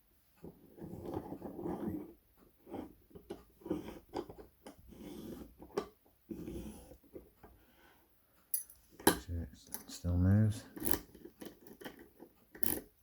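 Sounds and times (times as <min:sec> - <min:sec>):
lock pick clicks and scrapes: 0:10.7 - 0:12.9.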